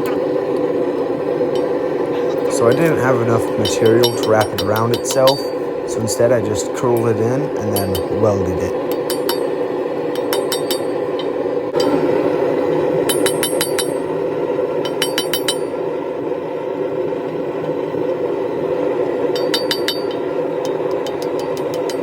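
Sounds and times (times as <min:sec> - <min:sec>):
steady rushing noise: 0:00.3 - 0:22.0
steel clinking and ringing: 0:01.5 - 0:01.8, 0:02.4 - 0:06.2, 0:07.0 - 0:12.0, 0:13.0 - 0:14.2, 0:14.8 - 0:15.8, 0:19.3 - 0:22.0.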